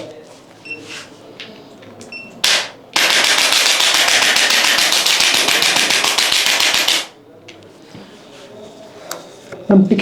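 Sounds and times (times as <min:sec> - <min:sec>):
percussion massager hammering: 0:02.5 - 0:07.1.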